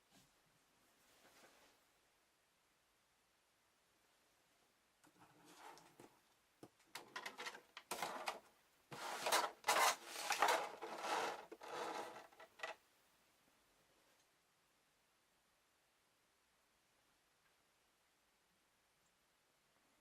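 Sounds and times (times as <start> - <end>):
hard plastic clicking and scraping: 6.9 - 12.8.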